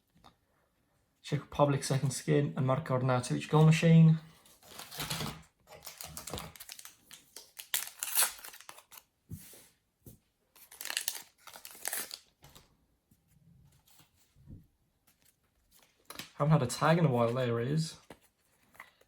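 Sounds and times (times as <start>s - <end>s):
foil packets tearing and crinkling: 4.6s - 9.0s, 10.6s - 12.3s
cards rustling: 4.6s - 9.7s, 10.6s - 12.7s, 15.1s - 19.0s.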